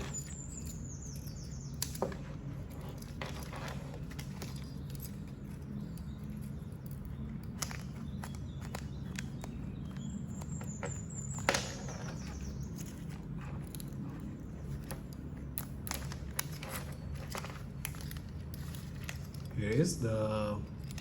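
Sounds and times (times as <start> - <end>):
metal carabiners clicking and clinking: 0.0 - 21.0
steady low hum: 0.0 - 21.0.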